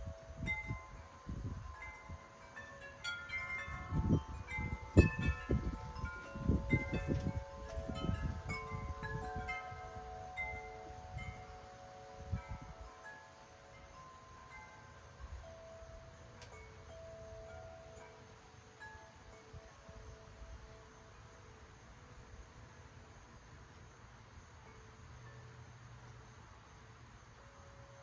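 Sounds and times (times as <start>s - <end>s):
wind buffeting microphone: 0.0s - 13.0s
wind chimes ringing: 0.0s - 28.0s.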